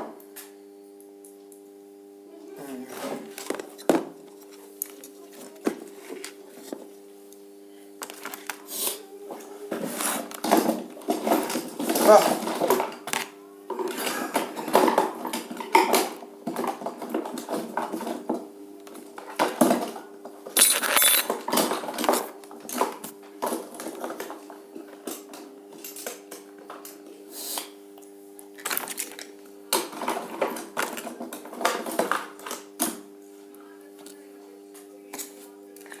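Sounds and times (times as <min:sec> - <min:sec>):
metallic clinks of hand tools: 0:20.6 - 0:21.3.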